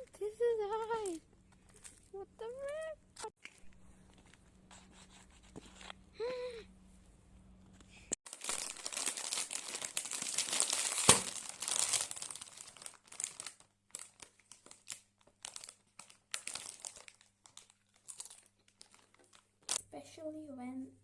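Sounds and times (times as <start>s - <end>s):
plastic packaging crinkling: 0.6s - 4.4s, 8.3s - 19.8s.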